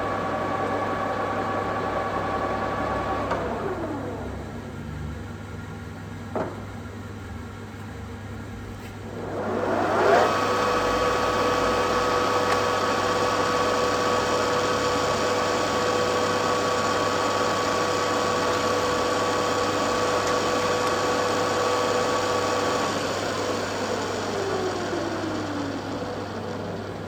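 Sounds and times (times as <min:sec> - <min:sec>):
lathe gear whine: 0:09.2 - 0:27.0.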